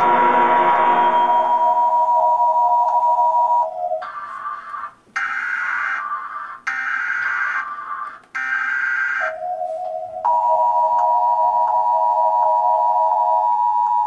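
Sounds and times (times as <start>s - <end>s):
harsh electronic buzzing: 0.0s - 1.9s
higher steady tone: 0.0s - 2.6s
steady low tone: 0.0s - 3.2s.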